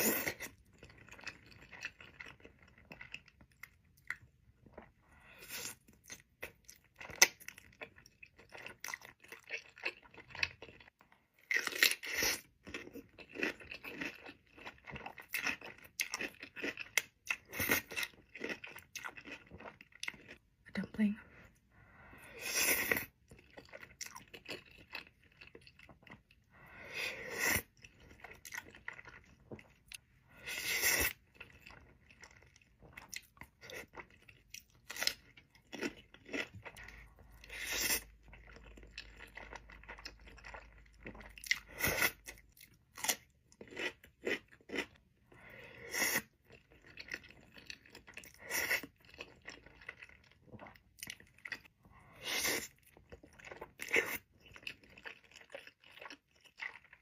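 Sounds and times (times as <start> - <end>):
person chewing food: 0.0 - 20.6, 21.4 - 57.0.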